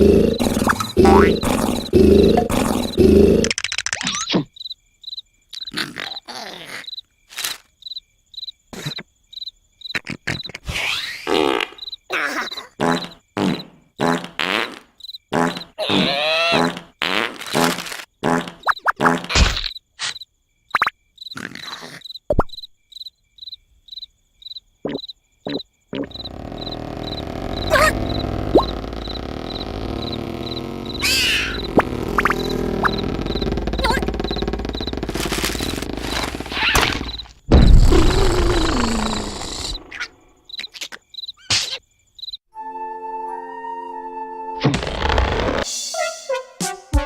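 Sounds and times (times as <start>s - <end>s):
cartoon snoring: 0.0s - 3.6s, 5.7s - 6.9s, 21.4s - 22.0s, 24.9s - 40.0s
crickets chirping: 0.0s - 10.6s, 11.3s - 14.3s, 14.9s - 15.8s, 19.7s - 42.5s
cartoon sound effects: 0.6s - 2.9s, 15.8s - 16.8s, 26.0s - 40.8s.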